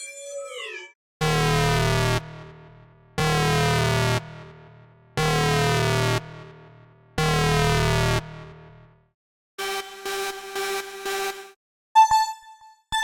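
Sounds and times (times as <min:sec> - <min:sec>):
harsh electronic alarm buzzer: 0:00.0 - 0:02.6, 0:03.2 - 0:04.4, 0:05.2 - 0:06.3, 0:07.2 - 0:08.4.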